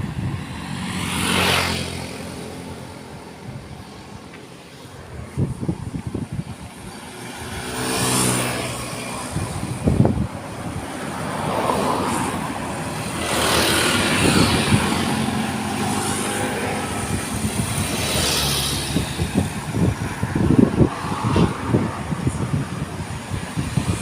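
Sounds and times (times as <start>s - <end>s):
vehicles passing by: 0.0s - 24.0s.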